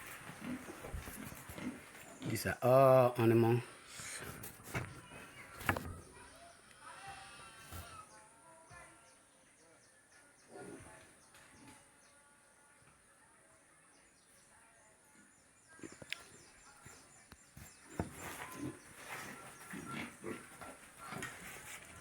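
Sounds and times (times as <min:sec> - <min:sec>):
pigs grunting: 0:00.0 - 0:02.7, 0:17.9 - 0:22.0.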